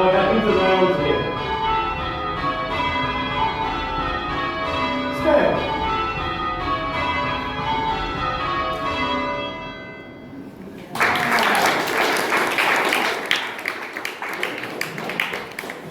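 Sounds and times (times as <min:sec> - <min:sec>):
church bells ringing: 0:00.0 - 0:13.4
applause: 0:10.8 - 0:15.9.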